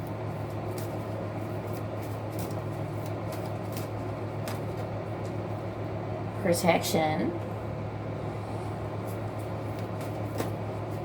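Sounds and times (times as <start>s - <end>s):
steady low hum: 0.0s - 11.0s
cards shuffling and flicking: 9.1s - 11.0s.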